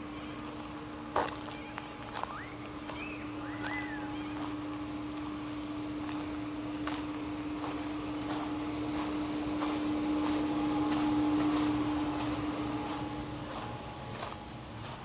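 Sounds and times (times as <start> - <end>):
low hum: 0.0 - 15.0
footsteps on garden path: 0.3 - 15.0
bird chirps: 1.5 - 4.5.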